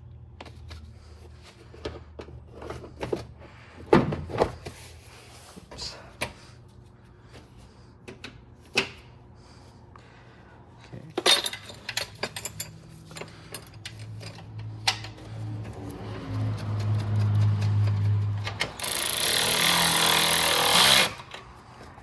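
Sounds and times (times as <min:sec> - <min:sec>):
hand tools and metal parts clinking: 0:11.0 - 0:22.0.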